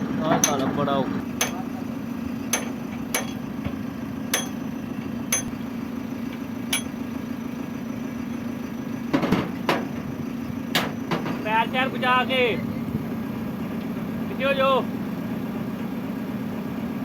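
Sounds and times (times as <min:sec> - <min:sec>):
low engine hum: 0:00.0 - 0:17.0
hammer striking steel: 0:00.4 - 0:00.7, 0:01.4 - 0:01.7, 0:02.5 - 0:03.4, 0:04.3 - 0:04.6, 0:05.3 - 0:05.6, 0:06.7 - 0:07.0.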